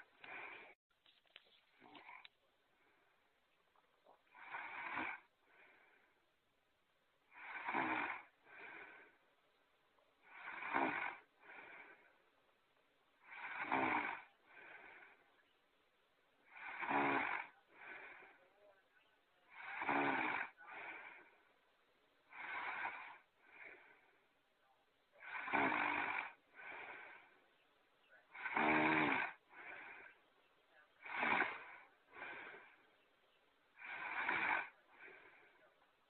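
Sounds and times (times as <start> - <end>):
faint breath out: 0.0 - 0.8, 4.2 - 6.4, 7.3 - 9.4, 10.2 - 12.4, 13.2 - 15.6, 16.4 - 36.0
loud snoring: 4.3 - 6.0, 7.3 - 9.1, 10.2 - 12.0, 13.2 - 15.2, 16.4 - 18.4, 19.5 - 21.3, 22.3 - 24.1, 25.2 - 27.4, 28.2 - 30.2, 31.0 - 32.8, 33.8 - 35.7.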